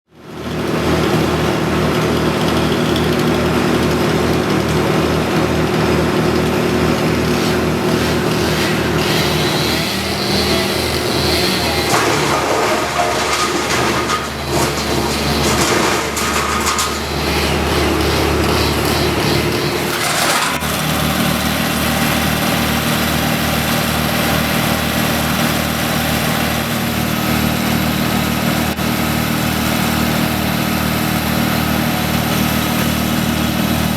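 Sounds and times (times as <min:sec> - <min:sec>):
machinery engine running: 0:01.0 - 0:33.9
short cracks: 0:11.5 - 0:17.2.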